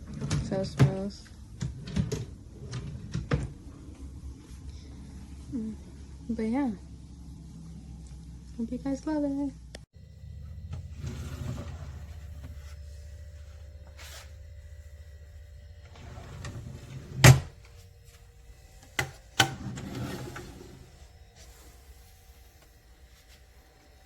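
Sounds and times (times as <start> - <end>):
low handling rumble: 10.0 - 18.8.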